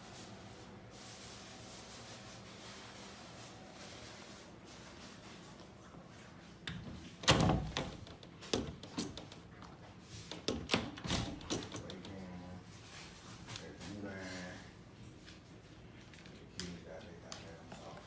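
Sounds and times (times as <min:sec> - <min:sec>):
door lock handle and latch clicks: 0:06.7 - 0:09.4, 0:10.3 - 0:12.1.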